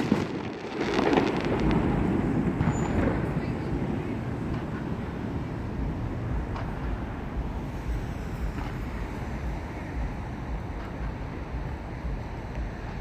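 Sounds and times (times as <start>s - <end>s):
faint firework pops: 0.0s - 5.2s, 5.8s - 7.9s
distant fireworks rumble: 0.0s - 13.0s.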